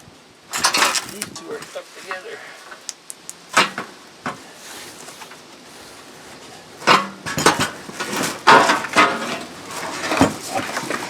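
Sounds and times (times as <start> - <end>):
steel beams clanking: 6.8 - 11.0.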